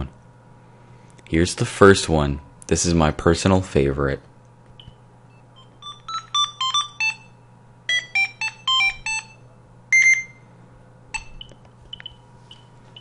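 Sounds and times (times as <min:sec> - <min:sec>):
phone ringtone beeping melody: 0:05.8 - 0:10.4.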